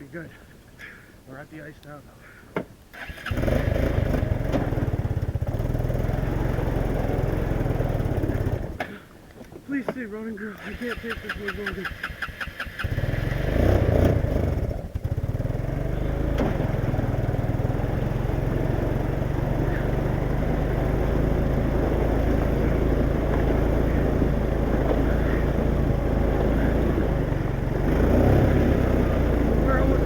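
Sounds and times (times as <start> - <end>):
atv engine running: 2.9 - 9.2, 10.4 - 30.0.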